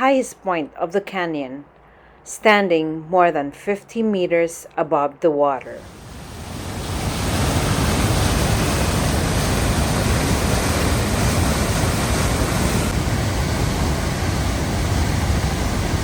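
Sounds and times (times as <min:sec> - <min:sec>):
water rushing through canyon: 0:05.8 - 0:16.0.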